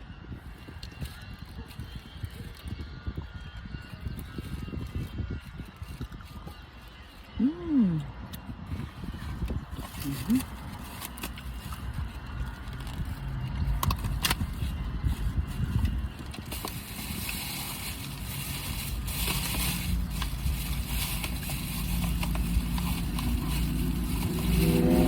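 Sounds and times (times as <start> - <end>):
steady low rumble: 7.4 - 25.0
rustling: 9.8 - 25.0.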